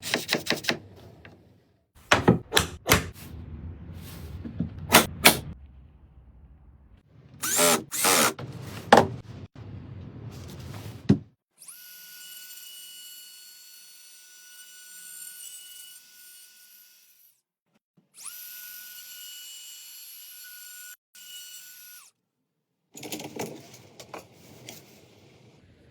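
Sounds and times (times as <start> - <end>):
wooden knocks and taps: 2.1 - 3.1
wood router motor whining: 7.4 - 8.4.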